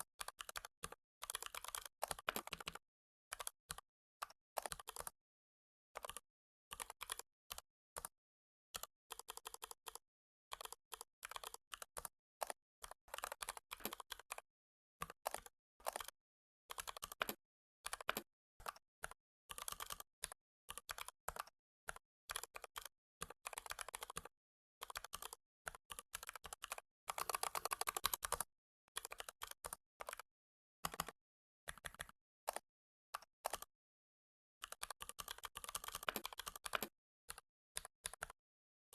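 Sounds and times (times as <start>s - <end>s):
typing on keyboard: 0.2s - 3.8s, 4.6s - 5.2s, 8.8s - 14.2s, 16.7s - 20.1s, 20.7s - 21.2s, 22.3s - 30.2s, 30.8s - 32.6s, 33.4s - 33.7s, 34.6s - 38.4s.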